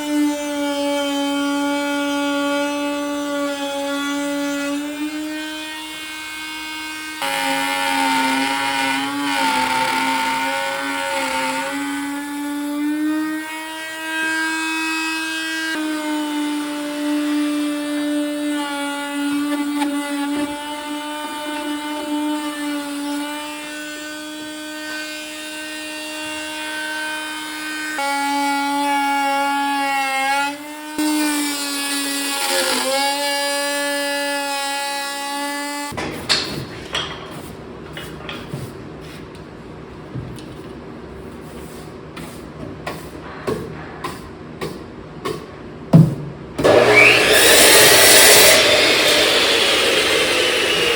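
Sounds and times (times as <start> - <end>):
electric router whining: 46.6 - 50.9.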